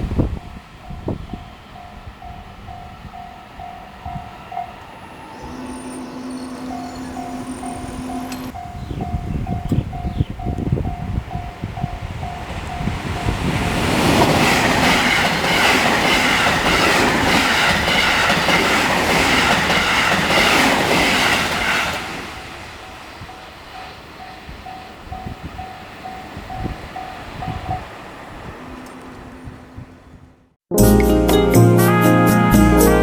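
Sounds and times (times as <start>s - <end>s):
level-crossing bell ringing: 1.8s - 9.4s
train wheel clicks on track: 5.5s - 8.6s, 12.4s - 22.2s.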